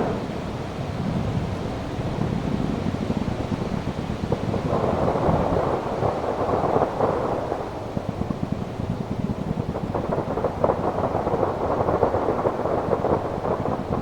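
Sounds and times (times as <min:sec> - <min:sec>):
firework shell bursts rumbling: 0:00.0 - 0:02.6
firework crackling: 0:04.6 - 0:14.0.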